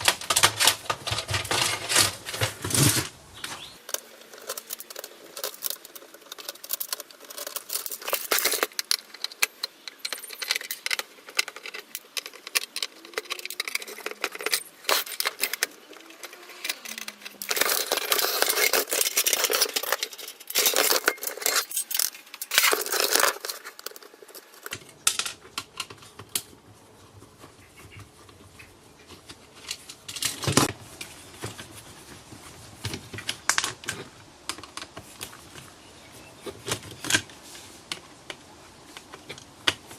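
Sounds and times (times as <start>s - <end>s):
screws and metal parts rattling: 0.0s - 3.1s, 3.7s - 26.0s.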